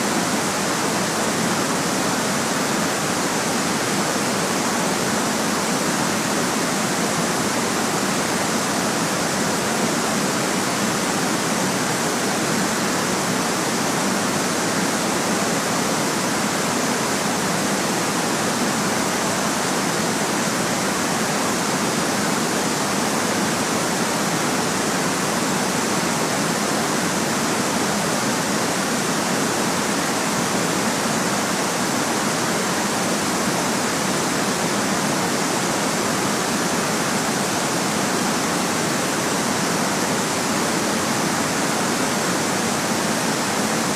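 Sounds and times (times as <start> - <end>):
steady white noise hiss: 0.0 - 43.9.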